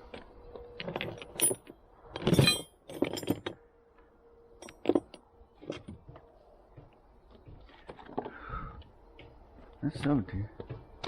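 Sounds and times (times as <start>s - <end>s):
metal tools clinking: 0.2s - 3.6s.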